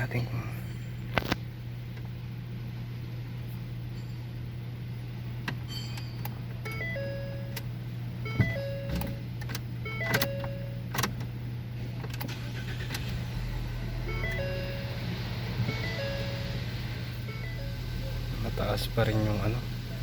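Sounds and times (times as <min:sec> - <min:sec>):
car engine idling: 0:10.3 - 0:20.0
electronic jingle: 0:14.0 - 0:18.4.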